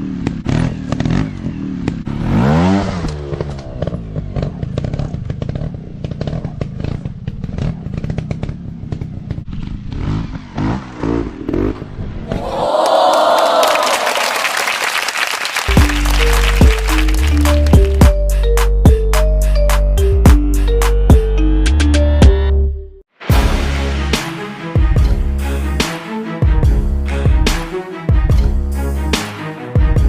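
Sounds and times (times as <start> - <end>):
dirt bike engine revving: 0.0 - 12.1.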